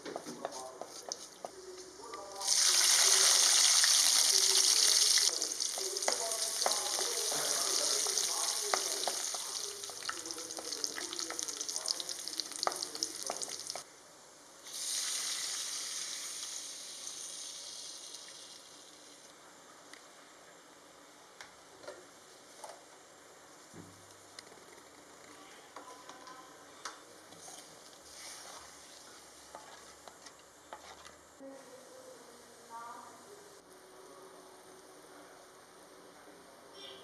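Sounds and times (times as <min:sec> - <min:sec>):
food sizzling in hot oil: 0:02.4 - 0:13.8, 0:14.6 - 0:19.2, 0:28.1 - 0:29.7.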